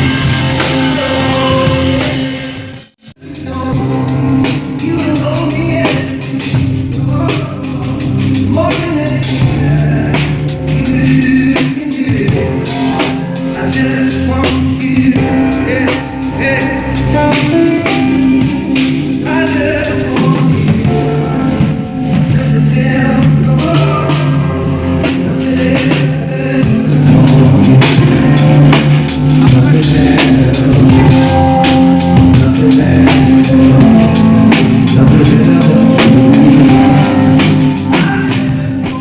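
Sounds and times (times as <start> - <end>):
band playing slow song: 0.0 - 39.0
person singing: 0.0 - 39.0.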